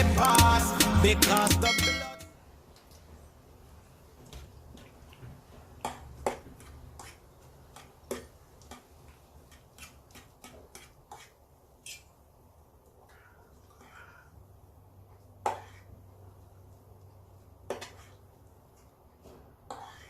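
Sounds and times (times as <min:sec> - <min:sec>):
eating clicks and smacks: 0:00.0 - 0:00.6.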